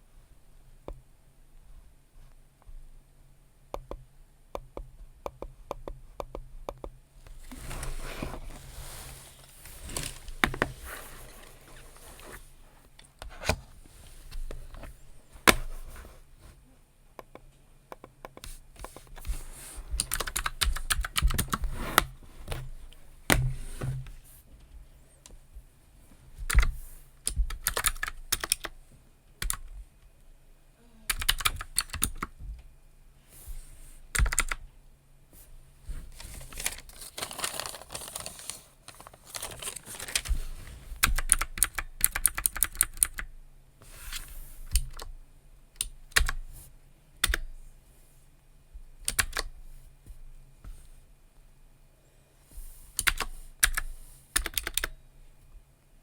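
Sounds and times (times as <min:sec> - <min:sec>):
typing on computer keyboard: 0:20.0 - 0:21.6, 0:27.3 - 0:28.7, 0:29.4 - 0:29.6, 0:31.1 - 0:32.3, 0:34.2 - 0:34.6, 0:41.0 - 0:43.3, 0:49.1 - 0:49.5, 0:54.4 - 0:54.9.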